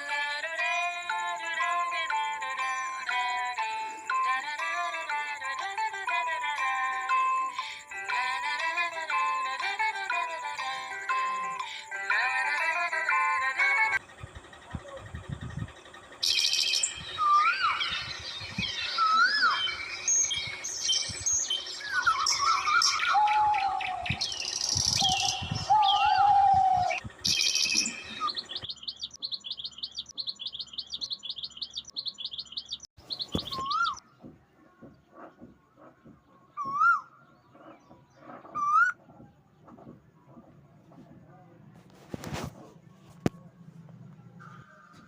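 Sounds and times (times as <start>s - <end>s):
birds chirping and whistling: 13.8s - 40.4s.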